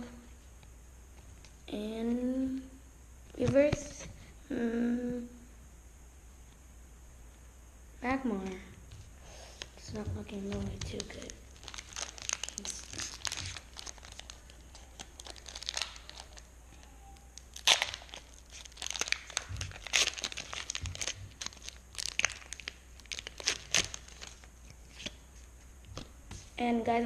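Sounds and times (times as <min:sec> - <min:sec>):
foil wrapper crinkling and tearing: 0:10.7 - 0:16.5, 0:17.4 - 0:25.2.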